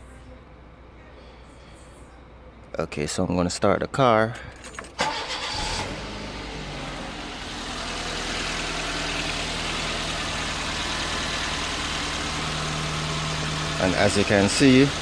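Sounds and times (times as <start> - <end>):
car engine starting and idling: 4.8 - 15.0.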